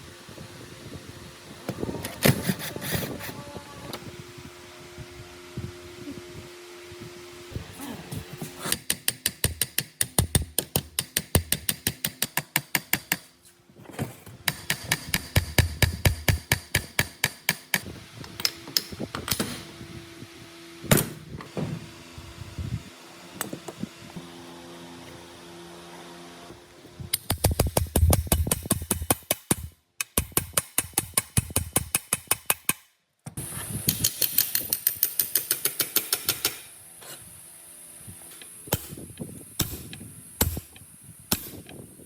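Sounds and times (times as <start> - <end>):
rapid metal tool clicks: 8.7 - 13.3, 14.5 - 17.8, 27.1 - 32.9, 33.9 - 36.7.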